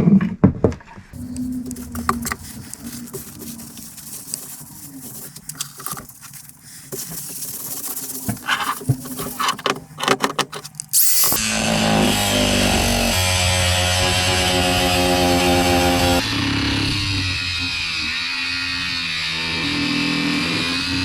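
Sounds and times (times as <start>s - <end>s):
metal tools clicking and rattling: 1.3s - 11.3s
power tool running: 5.6s - 17.4s.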